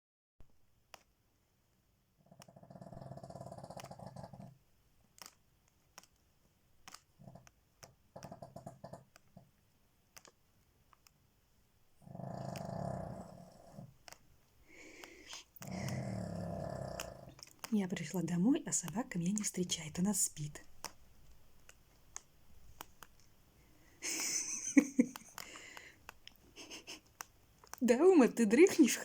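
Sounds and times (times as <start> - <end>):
dog snoring: 2.2 - 4.6, 12.0 - 13.9, 14.8 - 17.3.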